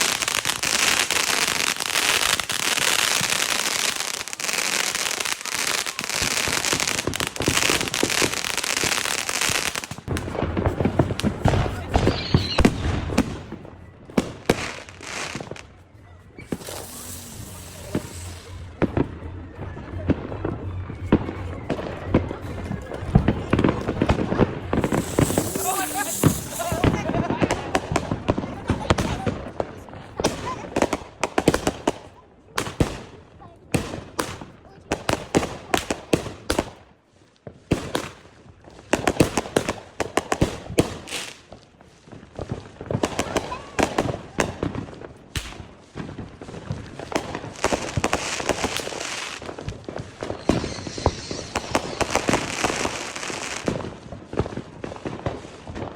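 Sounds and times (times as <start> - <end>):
fireworks bangs with crackling: 0.0 - 55.9
long high hiss: 16.5 - 18.7, 24.8 - 27.0
scattered pops: 24.8 - 27.0.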